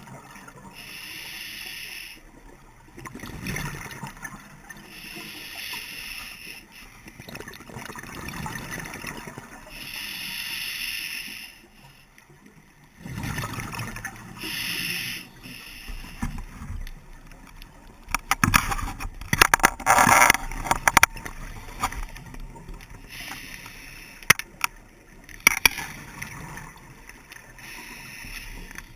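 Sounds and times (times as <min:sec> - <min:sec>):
hissing regulator inhalations: 0:00.8 - 0:02.2, 0:04.9 - 0:07.0, 0:09.7 - 0:12.0, 0:14.4 - 0:16.5, 0:23.0 - 0:24.5, 0:27.5 - 0:28.9
exhaled bubbles crackling: 0:16.1 - 0:23.4.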